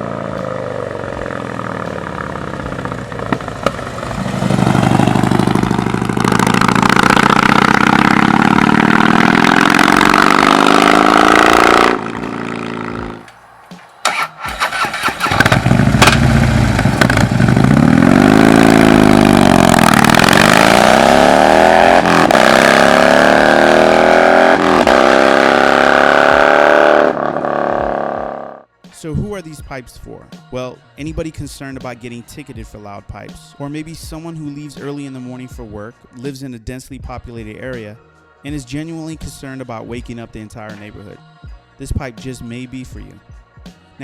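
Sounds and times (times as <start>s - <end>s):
motorcycle exhaust revving: 0.0s - 28.7s.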